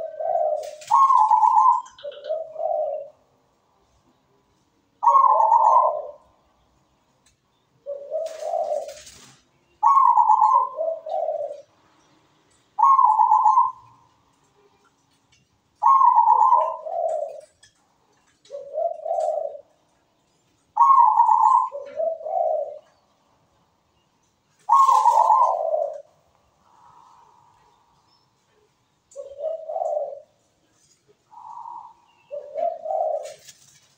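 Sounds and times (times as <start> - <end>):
dove cooing: 0.0 - 3.3, 5.0 - 6.4, 7.8 - 11.8, 12.8 - 14.7, 15.8 - 17.6, 18.3 - 19.9, 20.7 - 23.2, 24.6 - 27.9, 28.5 - 33.9.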